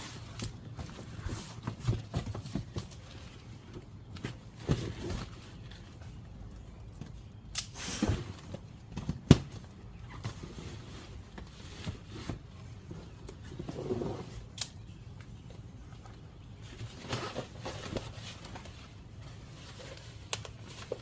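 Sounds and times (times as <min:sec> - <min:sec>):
plastic parts scraping and knocking: 0:00.1 - 0:06.2.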